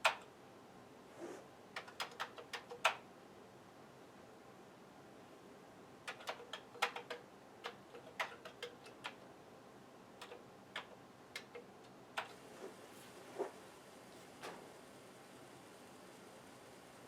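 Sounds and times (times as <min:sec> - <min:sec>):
computer keyboard keystrokes: 0:01.8 - 0:03.0, 0:06.1 - 0:09.2, 0:10.2 - 0:12.3.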